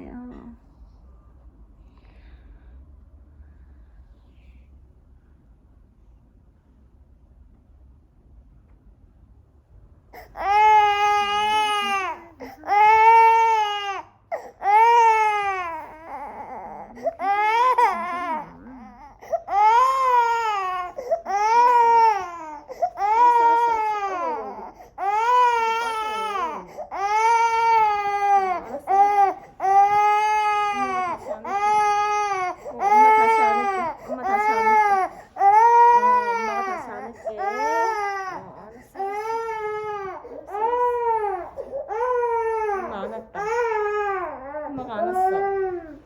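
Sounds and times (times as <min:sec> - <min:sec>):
baby crying: 0:10.2 - 0:46.0.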